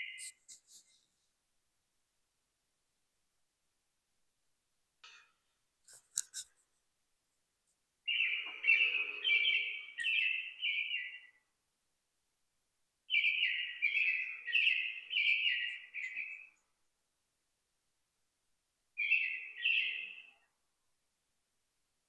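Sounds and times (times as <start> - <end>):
songbird singing: 0.0 - 0.6, 8.0 - 11.5, 13.1 - 16.7, 19.0 - 20.5.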